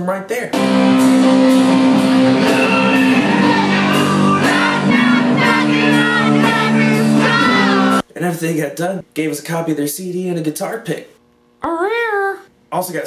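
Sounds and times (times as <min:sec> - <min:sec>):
drum kit beat with cymbals: 0:00.6 - 0:08.0
electric guitar chords: 0:00.6 - 0:08.0
person singing and shouting: 0:02.0 - 0:08.0.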